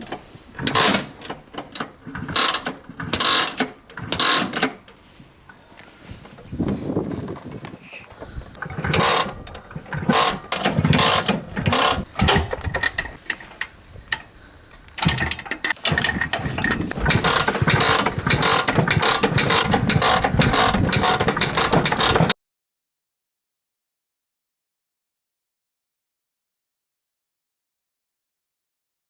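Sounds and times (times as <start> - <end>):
scooter kickstart ratcheting: 0.0 - 5.0, 8.2 - 22.4
scooter engine turning over: 0.1 - 4.9, 6.3 - 13.8, 15.0 - 22.4
rapid mechanical pulsing: 8.4 - 13.2, 15.0 - 22.3.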